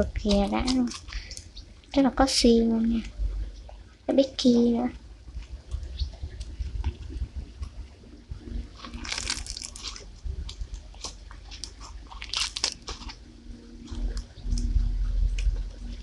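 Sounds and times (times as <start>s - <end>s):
foam slime crunchy crackling: 0.0s - 3.0s, 8.5s - 16.0s.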